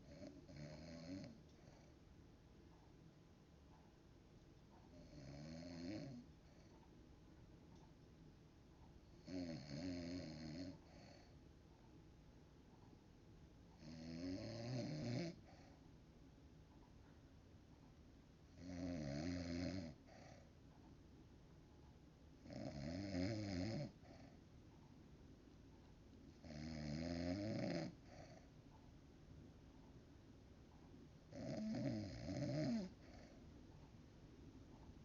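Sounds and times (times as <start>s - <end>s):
woman snoring: 0.0s - 1.9s, 5.0s - 6.2s, 9.2s - 11.3s, 13.8s - 15.6s, 18.6s - 20.4s, 22.4s - 24.3s, 26.4s - 28.5s, 31.3s - 33.4s
quiet breathing: 0.0s - 35.0s.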